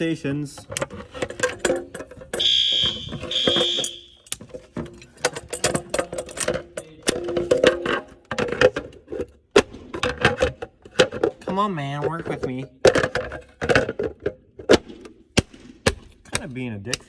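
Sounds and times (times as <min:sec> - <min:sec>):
clicks and knocks: 0:00.6 - 0:15.1
fire alarm horn blasts: 0:02.4 - 0:04.3.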